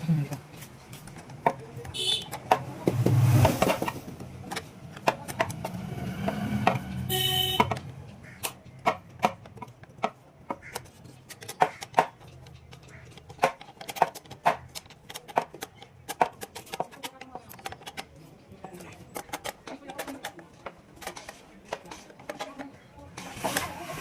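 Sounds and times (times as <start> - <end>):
tools and small parts clicking: 7.6 - 22.7.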